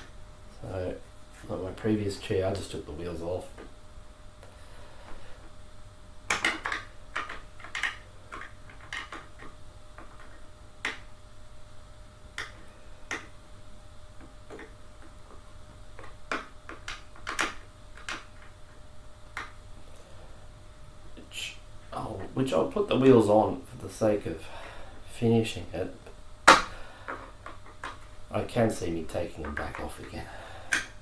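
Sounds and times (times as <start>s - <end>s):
chair parts clicking and knocking: 6.3s - 11.1s, 14.2s - 15.4s, 16.0s - 18.6s, 26.5s - 28.1s.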